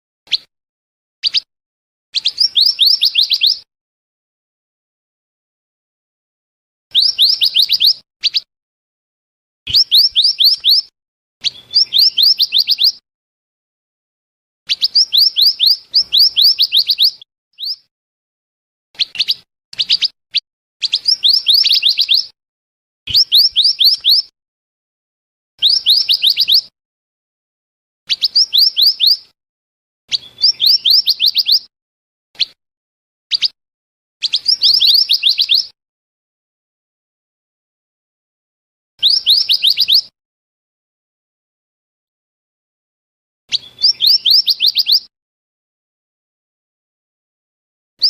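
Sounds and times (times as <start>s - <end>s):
rapid high whistled bird call: 0.3s - 0.5s, 1.2s - 1.5s, 2.2s - 3.7s, 6.9s - 8.5s, 9.7s - 13.0s, 14.7s - 17.9s, 19.0s - 22.4s, 23.1s - 24.3s, 25.6s - 26.7s, 28.1s - 29.4s, 30.1s - 31.7s, 33.3s - 33.6s, 34.2s - 35.8s, 39.0s - 40.2s, 43.5s - 45.1s.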